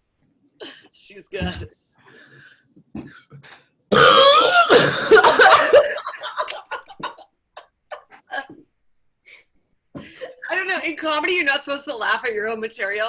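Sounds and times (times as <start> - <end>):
woman burping loudly: 3.9 - 7.2
woman coughing: 4.0 - 7.2
woman laughing: 5.0 - 8.6.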